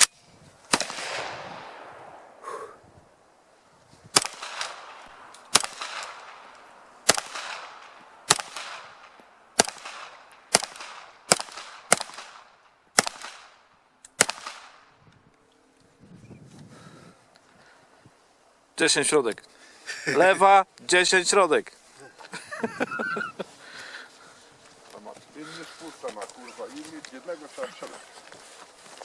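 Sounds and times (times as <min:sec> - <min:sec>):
pistol shots with echo: 0:00.7 - 0:02.4, 0:04.1 - 0:13.6, 0:14.2 - 0:14.9.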